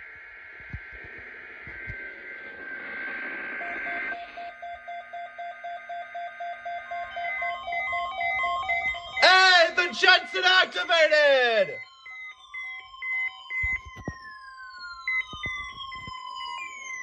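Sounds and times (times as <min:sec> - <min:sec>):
radio static hiss: 0:00.0 - 0:04.4
steady high data tones: 0:00.0 - 0:17.0
radio alert beeps: 0:06.7 - 0:12.3, 0:13.5 - 0:14.2, 0:15.1 - 0:16.1.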